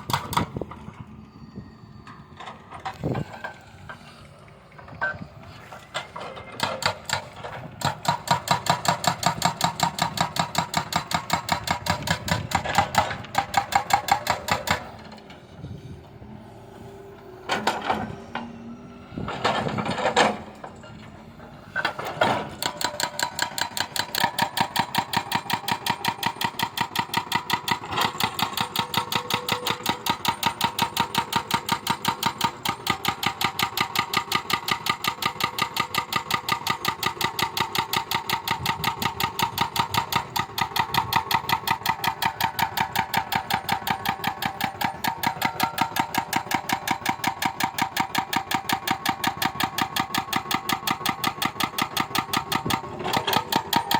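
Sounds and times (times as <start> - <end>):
engine running with slow beat: 21.3 - 53.9.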